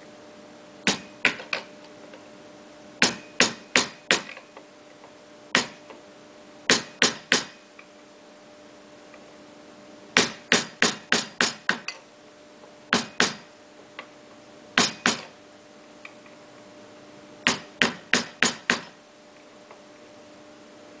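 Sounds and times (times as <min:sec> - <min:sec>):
hammer strikes: 0:00.8 - 0:01.7, 0:03.0 - 0:04.4, 0:05.5 - 0:05.8, 0:06.7 - 0:07.6, 0:10.2 - 0:12.0, 0:12.9 - 0:13.5, 0:14.8 - 0:15.3, 0:17.4 - 0:19.0.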